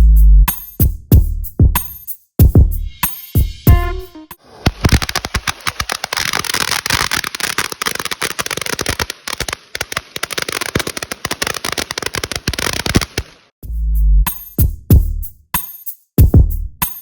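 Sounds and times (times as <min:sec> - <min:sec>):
crackling hiss: 0:04.4 - 0:13.5
firecrackers cracking: 0:04.4 - 0:13.5.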